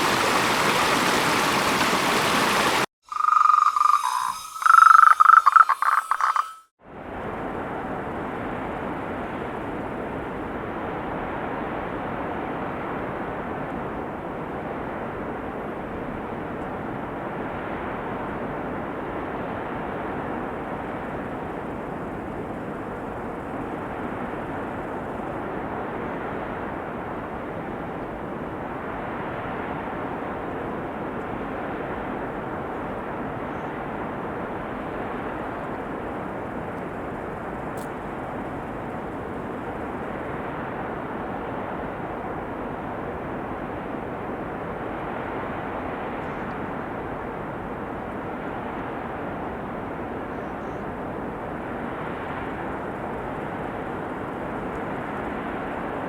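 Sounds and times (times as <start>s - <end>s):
flowing water rushing: 0.0s - 6.6s
frogs croaking: 0.0s - 6.7s.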